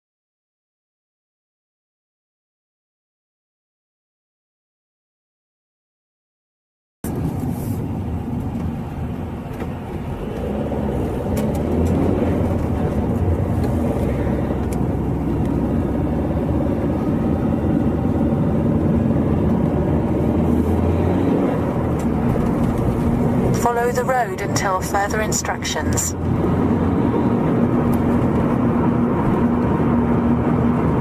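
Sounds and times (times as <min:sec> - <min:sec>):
engine and road noise rumble: 0:07.0 - 0:31.0.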